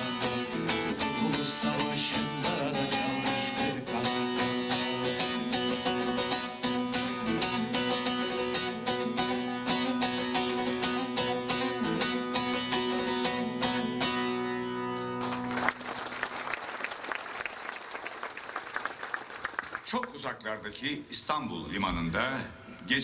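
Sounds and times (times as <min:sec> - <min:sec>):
strummed string instrument: 0:00.0 - 0:15.7
audience applause: 0:15.2 - 0:20.1.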